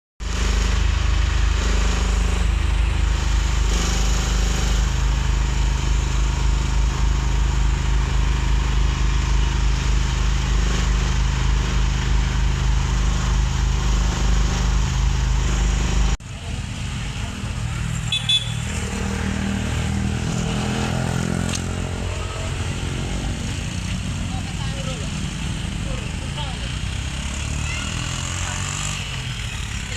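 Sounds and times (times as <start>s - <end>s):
quieter steady running sound: 0.2s - 18.5s
loud engine-like drone: 0.2s - 29.9s.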